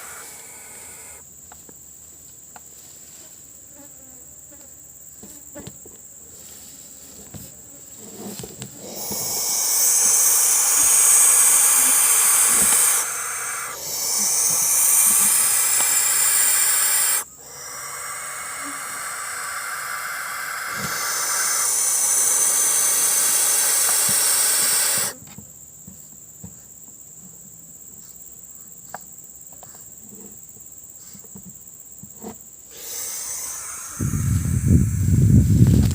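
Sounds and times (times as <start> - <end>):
barn owl hissing: 0.0 - 1.3, 8.2 - 25.2, 32.6 - 35.9
high insect buzz: 0.0 - 35.9.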